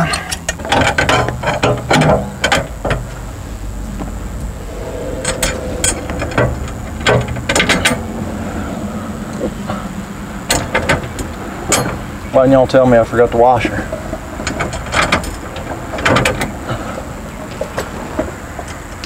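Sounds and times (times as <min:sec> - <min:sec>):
steady low hum: 0:02.0 - 0:12.4.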